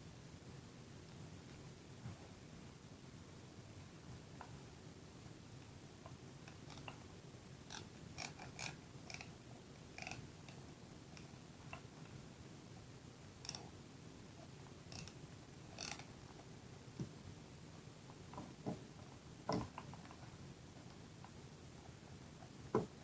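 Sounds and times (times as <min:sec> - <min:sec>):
low room hum: 0:00.0 - 0:23.0
small parts clicking and tapping: 0:14.9 - 0:15.2, 0:15.8 - 0:16.1.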